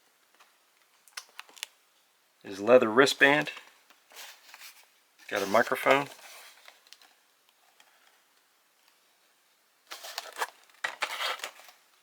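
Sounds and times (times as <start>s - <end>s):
packaging rustling and clicking: 9.9s - 11.8s.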